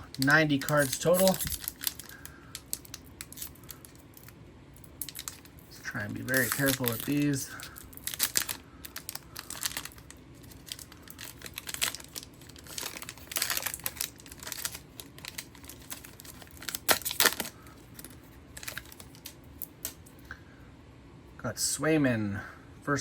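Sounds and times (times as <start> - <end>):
card pack wrapper crinkling: 0.0 - 20.0
wrapper ripping: 0.0 - 20.0.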